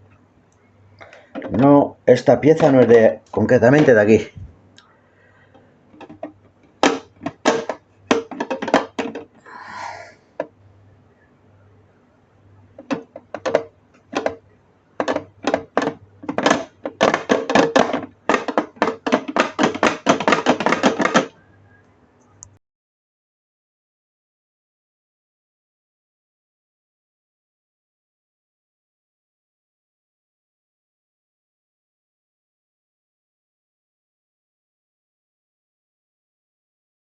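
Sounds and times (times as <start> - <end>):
plastic parts clicking and knocking: 1.0 - 1.7, 2.4 - 4.0, 5.5 - 9.4, 12.7 - 21.4.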